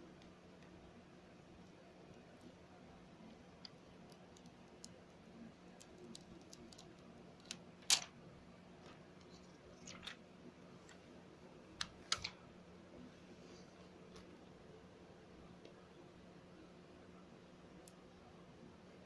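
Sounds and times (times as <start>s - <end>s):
small clicks and scrapes of handling: 3.3s - 8.2s, 8.8s - 10.2s, 11.8s - 12.4s.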